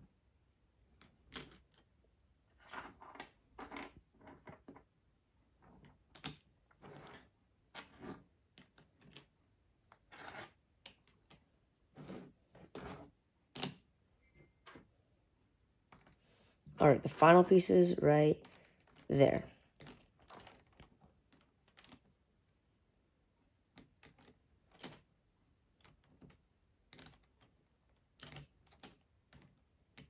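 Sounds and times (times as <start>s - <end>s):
plastic puzzle pieces clicking: 23.7s - 25.1s, 25.7s - 30.0s.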